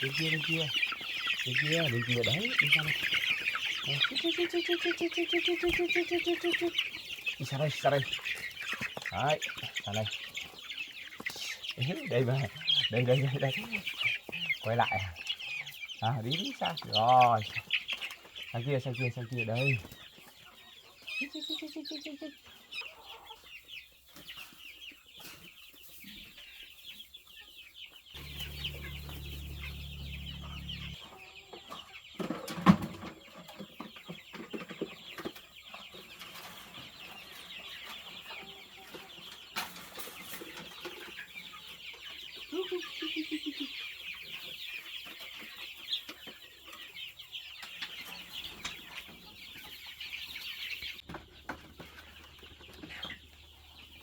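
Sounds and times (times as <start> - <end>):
chickens clucking: 0.0 - 54.0
high-pitched chirring chorus: 28.2 - 31.0
low rumble: 28.2 - 31.0.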